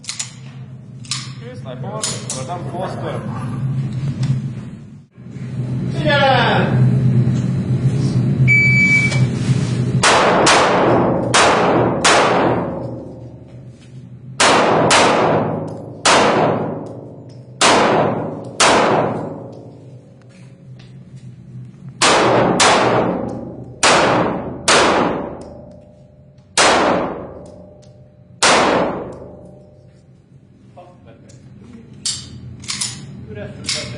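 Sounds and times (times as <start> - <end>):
electronic timer beep: 8.5 - 9.3
handgun shots echoing: 14.4 - 19.6, 26.5 - 27.8, 28.4 - 29.6.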